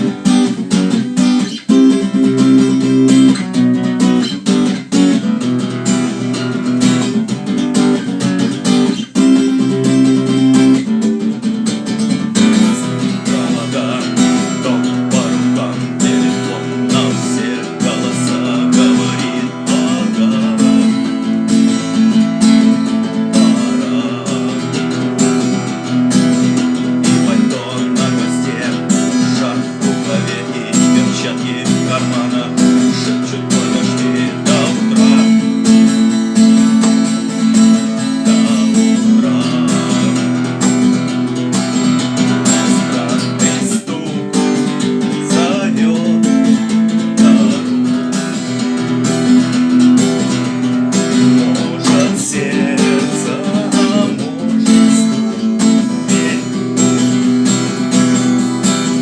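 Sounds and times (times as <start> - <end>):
acoustic guitar strumming: 0.0 - 59.0.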